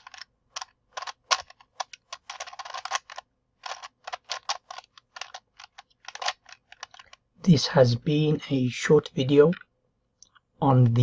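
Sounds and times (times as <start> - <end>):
puzzle cube clicking: 0.0 - 7.2.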